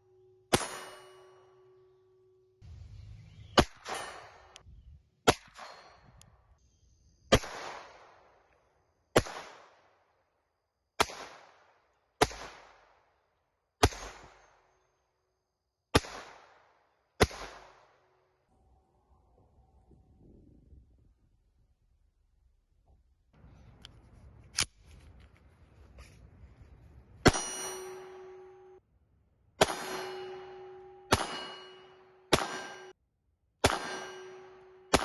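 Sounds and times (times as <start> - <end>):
pistol shots with ringing echo: 0.5 - 2.0, 3.4 - 4.6, 5.2 - 6.2, 7.3 - 8.5, 9.1 - 10.2, 11.0 - 13.2, 13.8 - 14.8, 15.9 - 18.3, 27.2 - 28.6, 29.6 - 33.0, 33.6 - 35.0.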